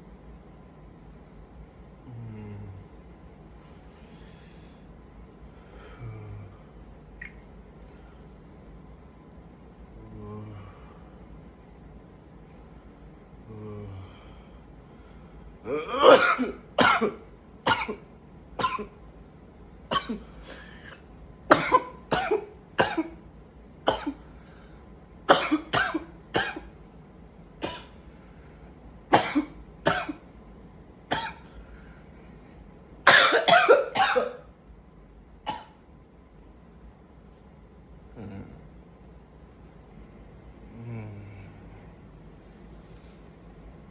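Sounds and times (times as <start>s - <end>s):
man coughing: 15.7s - 18.0s, 18.6s - 19.0s, 19.9s - 23.2s, 23.9s - 24.2s, 25.3s - 26.7s, 27.6s - 28.0s, 29.1s - 30.2s, 31.1s - 31.6s, 33.1s - 34.5s.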